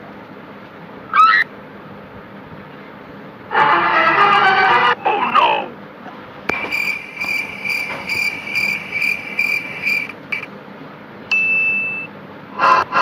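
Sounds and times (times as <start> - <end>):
crickets chirping: 6.5 - 10.5.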